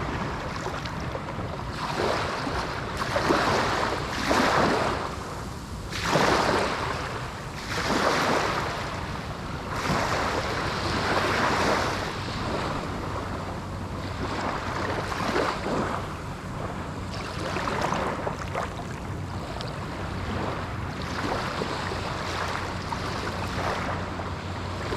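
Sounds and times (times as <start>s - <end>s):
waves washing up a sandy shore: 0.0s - 24.9s.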